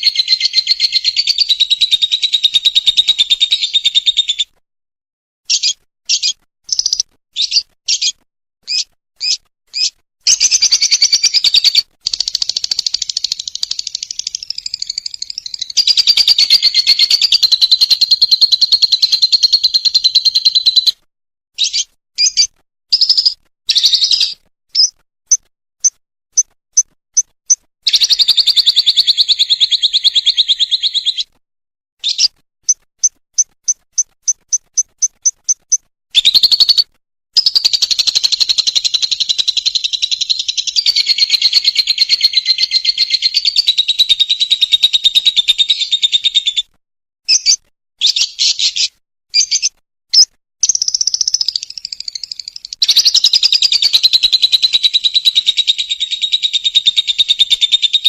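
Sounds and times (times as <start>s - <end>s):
sharp bird chirps: 0.0s - 4.6s, 5.5s - 21.0s, 21.6s - 31.4s, 32.0s - 46.7s, 47.3s - 58.0s
bird rattling trills: 5.5s - 20.7s, 32.1s - 44.8s.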